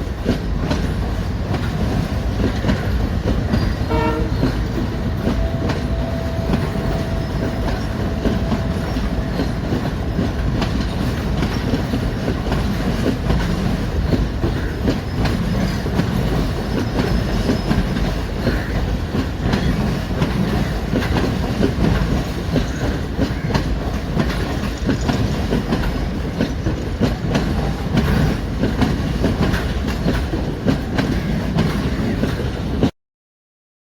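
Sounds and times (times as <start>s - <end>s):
train rumbling on rails: 0.0s - 32.9s
wheels clicking over rail joints: 0.1s - 32.9s
train horn: 3.8s - 10.0s.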